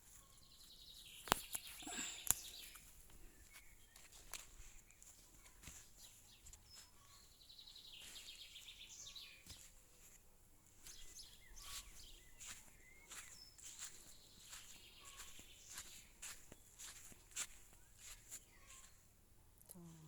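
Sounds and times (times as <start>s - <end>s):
faint birds chirping: 0.0s - 20.0s
bird trill: 14.4s - 15.9s, 18.5s - 19.0s.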